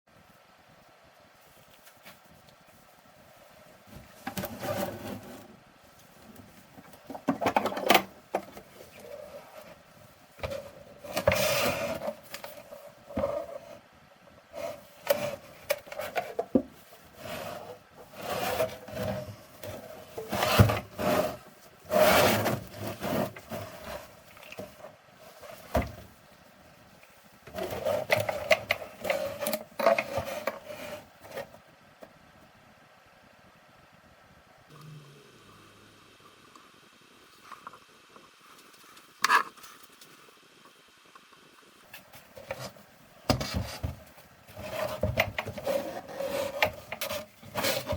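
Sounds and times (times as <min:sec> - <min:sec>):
scraping and rubbing on a box: 0:03.8 - 0:05.6, 0:08.4 - 0:13.9, 0:14.5 - 0:26.3, 0:27.5 - 0:31.6, 0:41.9 - 0:47.9.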